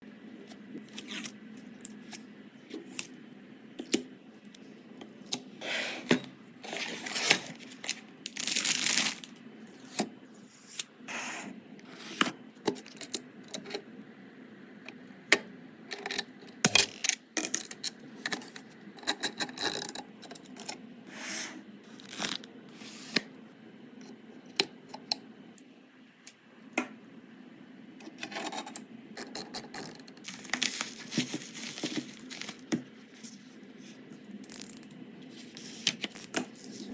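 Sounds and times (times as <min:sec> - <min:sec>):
rustling scrapes: 0:30.3 - 0:34.0.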